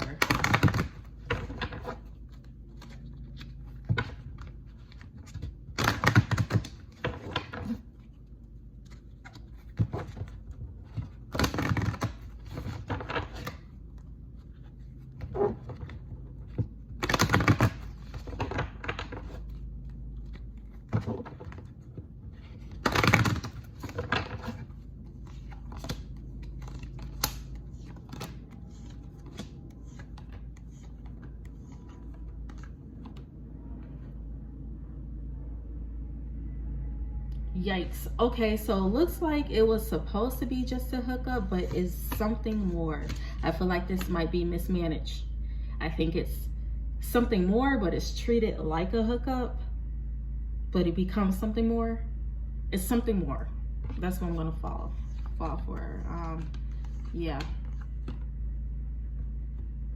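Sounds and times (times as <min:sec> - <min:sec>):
low steady hum: 0:00.0 - 0:59.9
cards riffle shuffling: 0:08.8 - 0:33.2.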